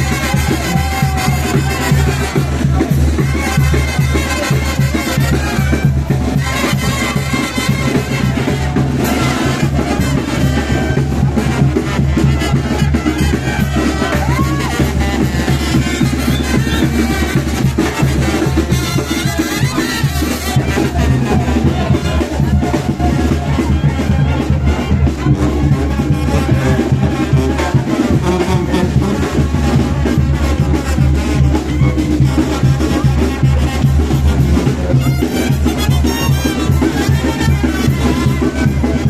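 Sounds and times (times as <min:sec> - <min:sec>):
brass band playing dance music: 0:00.0 - 0:39.0
steady drum beat: 0:00.0 - 0:39.0.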